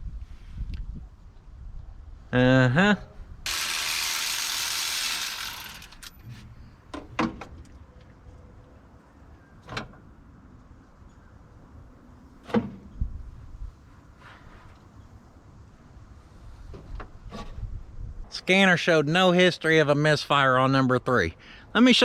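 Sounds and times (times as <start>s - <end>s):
tools clicking and clinking: 3.5s - 6.3s.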